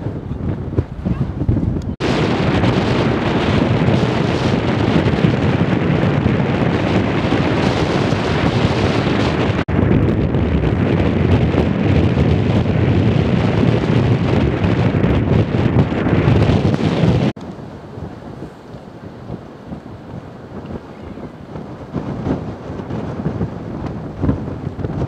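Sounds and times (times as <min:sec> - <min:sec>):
strong wind buffeting microphone: 0:00.0 - 0:25.0.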